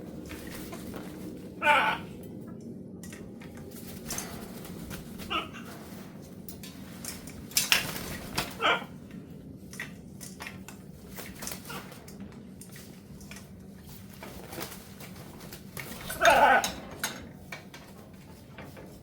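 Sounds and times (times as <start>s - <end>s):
clatter of hard objects: 3.0s - 8.6s, 9.7s - 19.0s.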